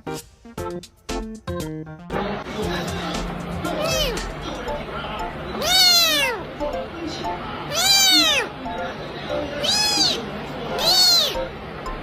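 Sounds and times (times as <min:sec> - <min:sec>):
plucked background music: 0:00.0 - 0:05.5, 0:06.6 - 0:07.6, 0:08.6 - 0:09.6, 0:10.7 - 0:12.0.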